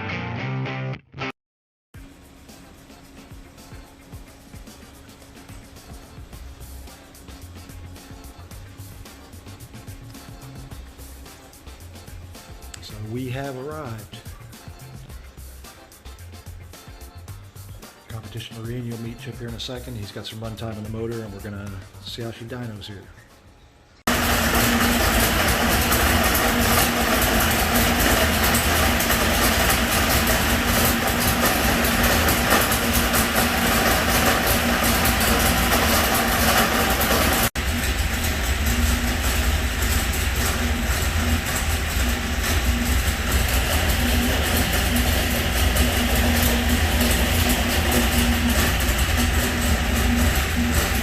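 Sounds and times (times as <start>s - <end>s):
race engine running: 24.1s - 51.0s.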